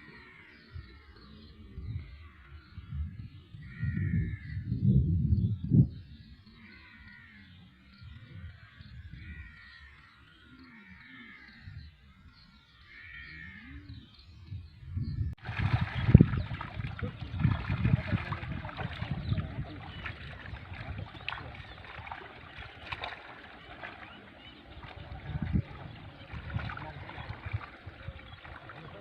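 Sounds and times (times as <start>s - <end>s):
water splashing and sloshing: 15.4s - 29.0s.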